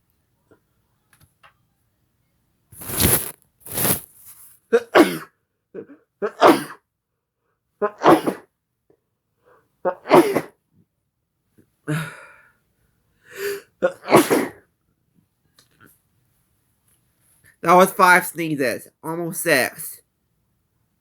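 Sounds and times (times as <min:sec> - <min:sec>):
person sneezing: 0:04.8 - 0:05.3, 0:06.2 - 0:06.8, 0:07.8 - 0:08.5, 0:09.9 - 0:10.6, 0:13.8 - 0:14.6.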